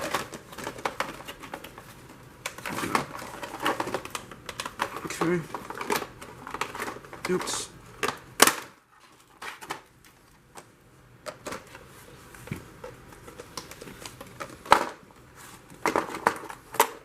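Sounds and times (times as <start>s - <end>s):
stiff plastic packaging snapping: 2.4s - 8.8s.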